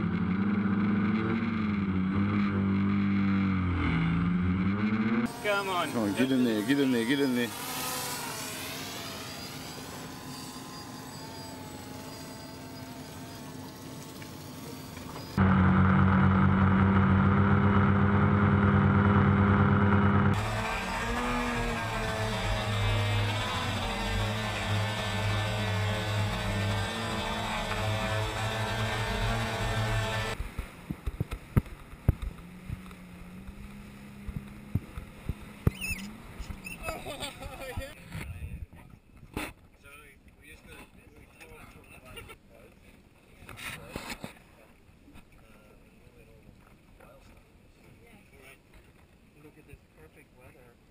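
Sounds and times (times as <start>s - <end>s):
drone propeller hum: 0.0s - 30.4s
low pulsing motor hum: 0.0s - 30.5s
high whistle-like glides: 8.5s - 13.8s
water and wind noise: 30.4s - 50.1s.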